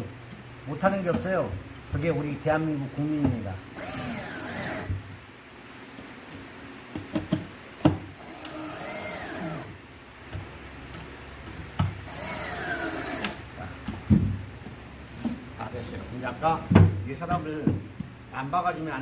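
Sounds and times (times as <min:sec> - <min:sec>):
electric drill driving screws: 0:03.8 - 0:05.0, 0:08.2 - 0:09.8, 0:12.0 - 0:13.4.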